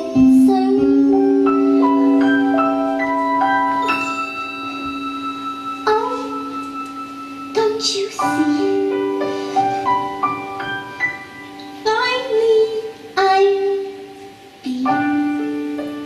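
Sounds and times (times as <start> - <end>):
woman singing: 0.0 - 1.8, 5.8 - 6.7, 7.5 - 9.0, 11.8 - 16.0
piano accompaniment: 0.0 - 16.0.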